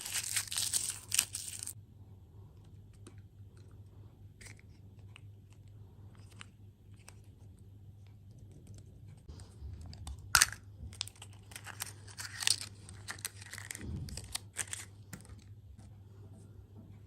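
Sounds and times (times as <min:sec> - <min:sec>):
wrapper crinkling: 0:00.0 - 0:01.8, 0:10.4 - 0:14.9
low hum: 0:00.1 - 0:17.0.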